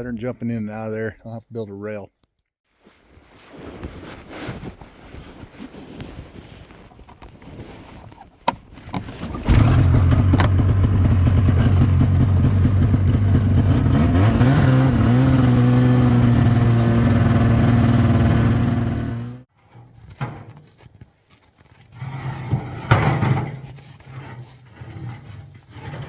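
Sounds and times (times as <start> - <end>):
vehicle engine running: 9.4 - 19.4.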